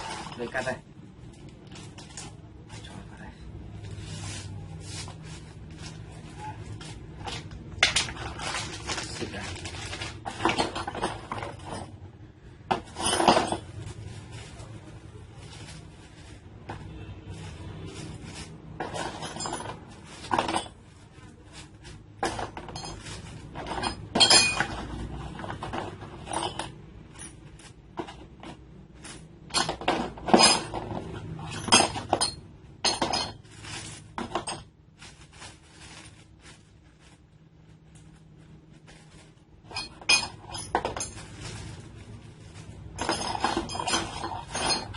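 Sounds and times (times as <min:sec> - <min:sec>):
metal parts clinking: 0:07.3 - 0:12.0, 0:12.7 - 0:13.9, 0:18.0 - 0:20.8, 0:22.2 - 0:34.7, 0:39.2 - 0:44.9.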